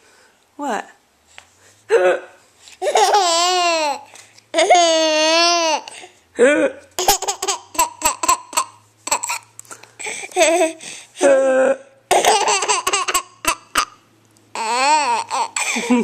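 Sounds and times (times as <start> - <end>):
baby laughing: 2.8 - 6.1, 7.0 - 10.8, 12.1 - 16.0.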